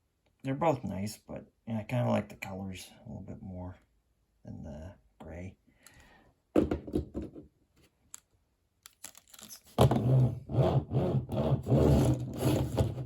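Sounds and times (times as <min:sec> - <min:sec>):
toys rubbing and scraping: 0:09.3 - 0:13.0.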